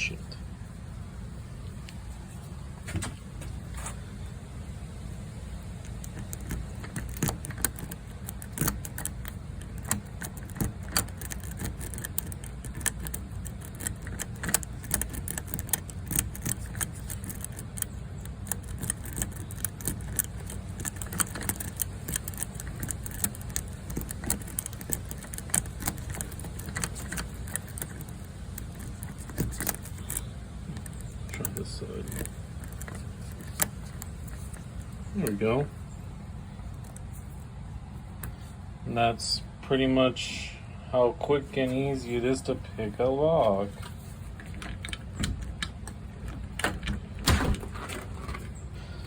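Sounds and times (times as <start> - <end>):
steady low rumble: 0.0 - 47.8
lock picking metallic clicks: 5.8 - 35.4.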